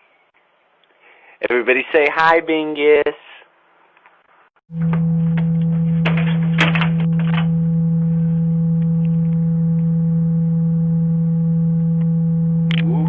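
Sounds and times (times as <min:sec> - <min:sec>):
loud low hum: 0:04.7 - 0:13.0.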